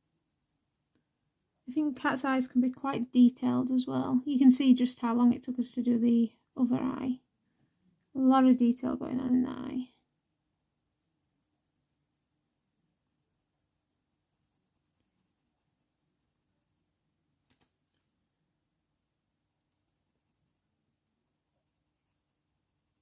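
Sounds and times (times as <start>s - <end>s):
pencil shading on paper: 0.0s - 10.2s, 11.0s - 17.2s, 19.3s - 23.0s.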